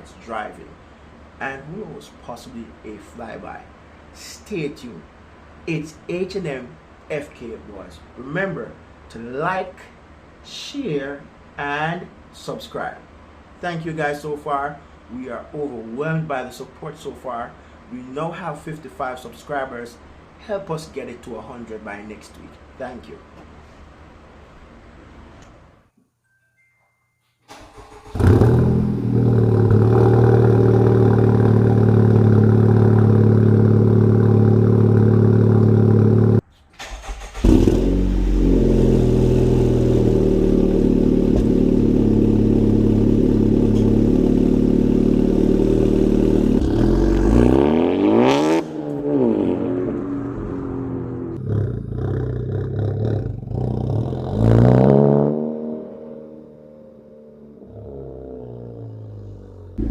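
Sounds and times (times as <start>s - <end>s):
car engine cold starting: 27.5s - 47.6s.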